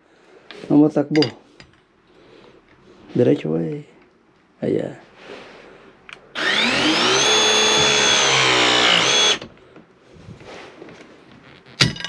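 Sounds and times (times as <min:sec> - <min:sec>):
electric tool motor whining: 0:06.3 - 0:09.5.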